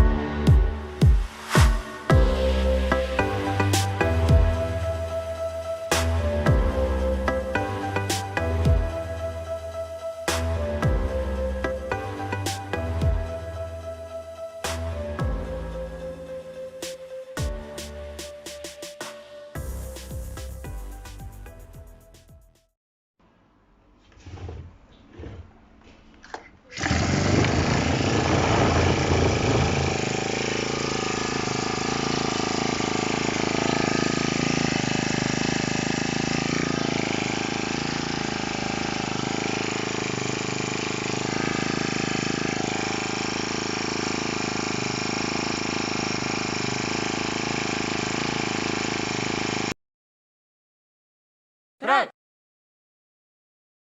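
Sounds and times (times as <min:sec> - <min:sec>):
small engine running: 0:00.0 - 0:18.7, 0:26.7 - 0:49.8.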